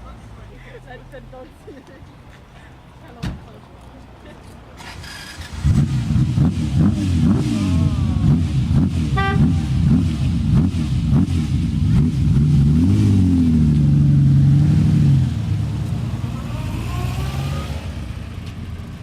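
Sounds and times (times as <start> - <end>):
engine revving: 4.8 - 19.0
car horn toot: 9.0 - 10.1.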